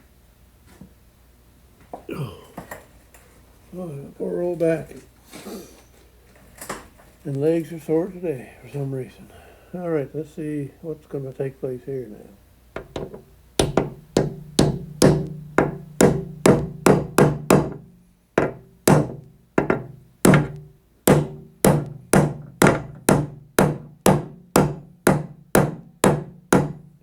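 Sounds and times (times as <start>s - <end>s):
hammer striking metal: 12.8s - 17.8s, 18.4s - 26.9s.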